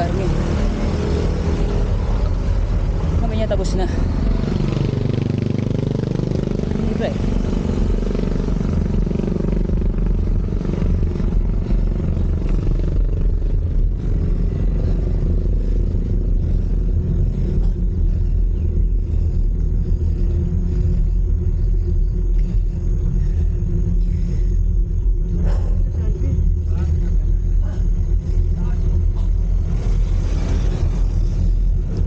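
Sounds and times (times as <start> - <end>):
wind and road noise rumble: 0.0 - 32.0.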